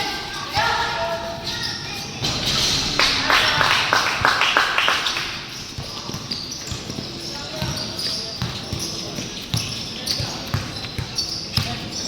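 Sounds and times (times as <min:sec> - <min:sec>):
gym background noise: 0:00.0 - 0:12.0
hand clapping: 0:03.0 - 0:05.6.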